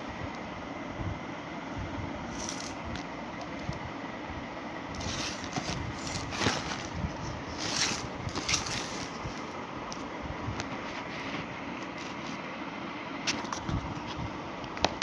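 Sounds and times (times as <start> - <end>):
packaging rustling and scraping: 2.3 - 3.7, 5.0 - 12.4.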